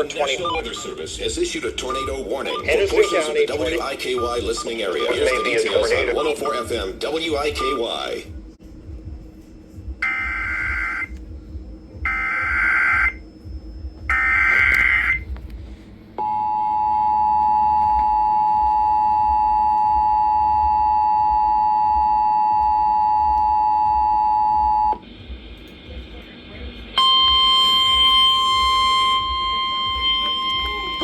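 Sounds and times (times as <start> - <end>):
two-tone attention signal: 0.0 - 3.4, 4.2 - 8.1, 10.0 - 11.1, 12.0 - 13.2, 16.2 - 25.0, 27.0 - 31.0
warbling digital data bursts: 0.0 - 8.2.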